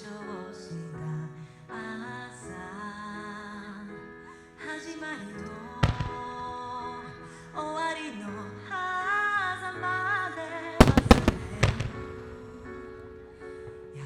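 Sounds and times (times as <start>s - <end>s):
woman singing a song: 0.0s - 13.0s
firework bursting with sharp bang: 5.8s - 6.8s, 10.8s - 13.6s.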